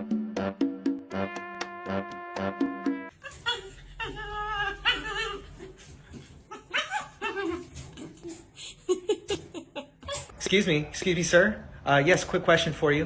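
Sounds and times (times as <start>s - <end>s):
dog whining: 3.2s - 8.0s.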